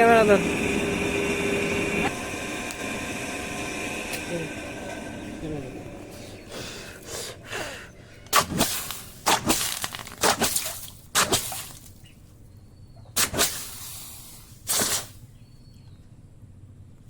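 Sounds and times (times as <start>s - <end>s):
sharp strokes on steel blade: 14.7s - 15.2s.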